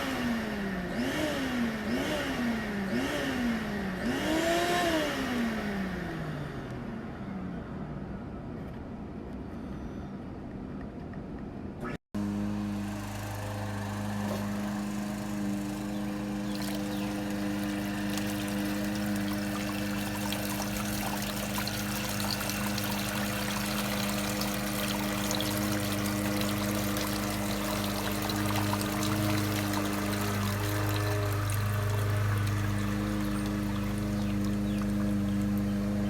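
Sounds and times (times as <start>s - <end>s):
steady low hum: 12.7s - 36.0s
water trickling and splashing: 12.7s - 36.0s.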